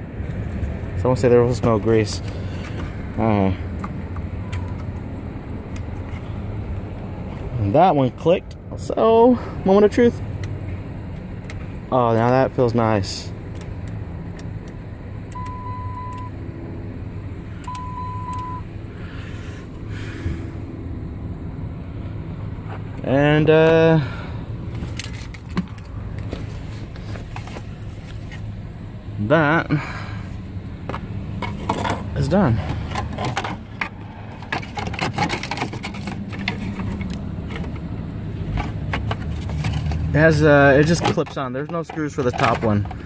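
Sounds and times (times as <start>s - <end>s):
low hum inside car: 0.0s - 43.0s
electronic warning beeps: 15.3s - 16.4s, 17.6s - 18.7s.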